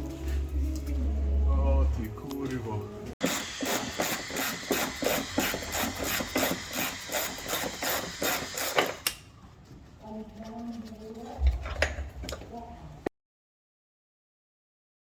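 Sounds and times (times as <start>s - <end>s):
hand tool rasping: 3.2s - 9.1s.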